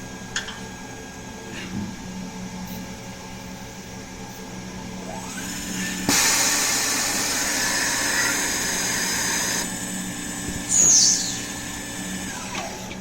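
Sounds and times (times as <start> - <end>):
lathe machine hum with hiss: 2.2 - 13.0
short falling whine: 10.6 - 12.9.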